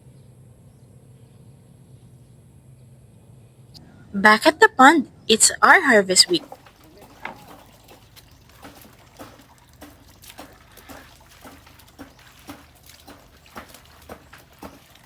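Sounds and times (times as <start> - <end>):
pond water splashing and trickling: 6.2 - 15.0.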